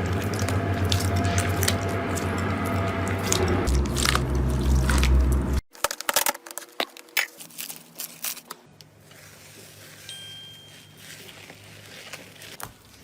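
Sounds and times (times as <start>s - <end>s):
low hum: 0.0s - 5.6s
slime squishing by hand: 0.0s - 5.6s, 6.5s - 13.0s.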